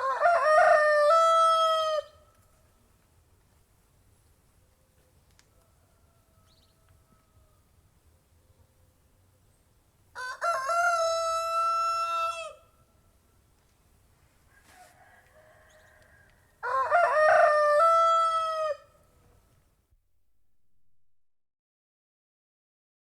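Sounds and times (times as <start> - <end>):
distant rooster crowing: 0.0 - 2.2, 5.4 - 7.8, 10.2 - 12.7, 14.4 - 19.1
rooster crowing: 0.0 - 2.2, 5.6 - 7.7, 10.2 - 12.7, 14.5 - 19.0.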